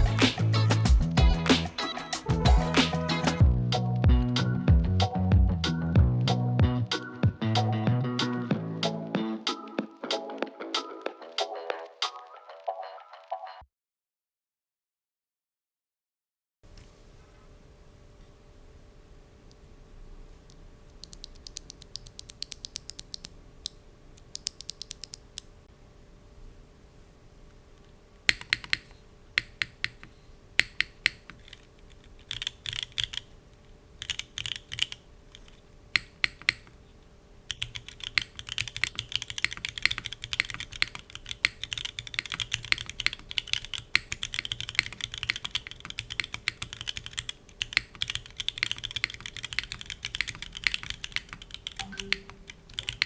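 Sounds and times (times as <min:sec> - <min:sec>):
mechanical keyboard typing: 0:21.0 - 0:25.4, 0:28.3 - 0:33.3, 0:34.0 - 0:36.7, 0:37.5 - 0:53.0.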